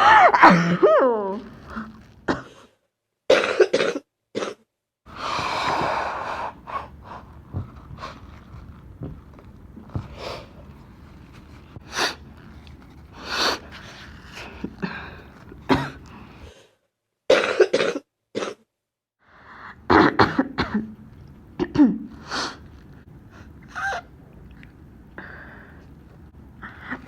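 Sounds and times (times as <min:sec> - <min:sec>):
person coughing: 0:00.0 - 0:01.1, 0:01.8 - 0:02.7, 0:03.3 - 0:04.6, 0:15.7 - 0:16.1, 0:17.3 - 0:18.7, 0:19.9 - 0:20.9
throat clearing: 0:15.6 - 0:16.1.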